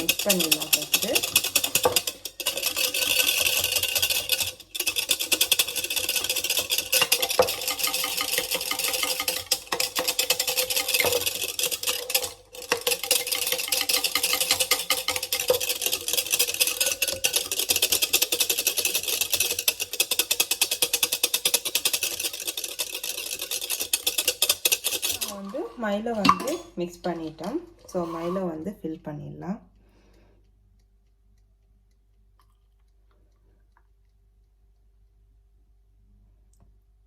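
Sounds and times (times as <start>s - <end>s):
utensil rattling against bowl: 0.0s - 28.7s.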